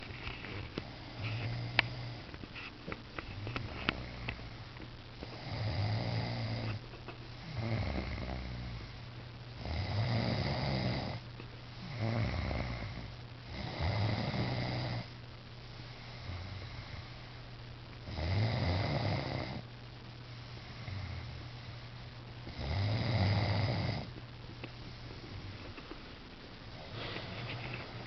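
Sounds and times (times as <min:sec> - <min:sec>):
person snoring: 0:00.8 - 0:02.3, 0:05.3 - 0:06.8, 0:07.4 - 0:09.0, 0:09.6 - 0:11.2, 0:11.8 - 0:15.1, 0:18.0 - 0:19.6, 0:22.5 - 0:24.1.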